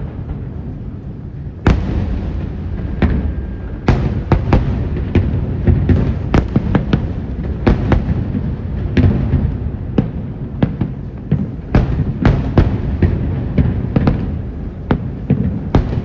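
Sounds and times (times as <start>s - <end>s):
deep rumble of shell bursts: 0.0s - 9.7s
fireworks bangs: 0.0s - 16.0s.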